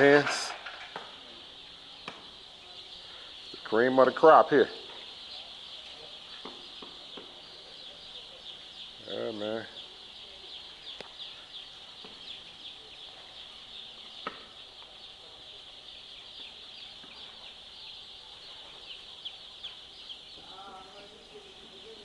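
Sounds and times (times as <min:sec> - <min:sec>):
chorus of hens peeping: 0:00.0 - 0:22.0.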